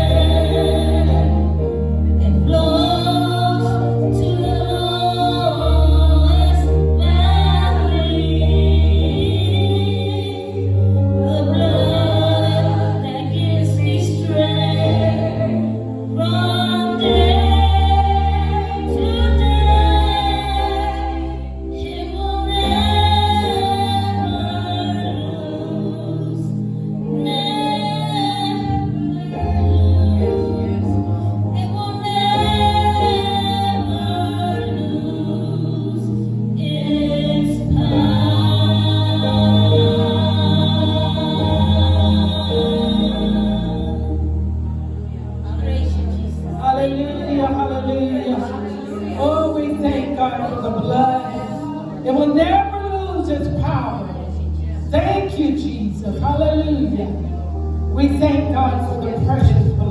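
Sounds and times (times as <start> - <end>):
woman singing gospel: 0.0 - 44.5, 45.4 - 59.9
musical accompaniment with bass: 0.0 - 59.9
organ chords: 0.0 - 59.9.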